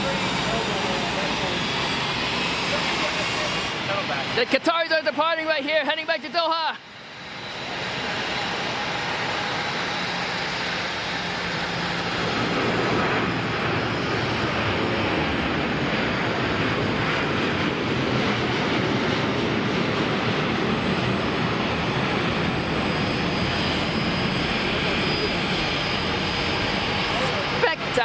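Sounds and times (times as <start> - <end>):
jet engines at takeoff thrust: 0.0 - 28.0.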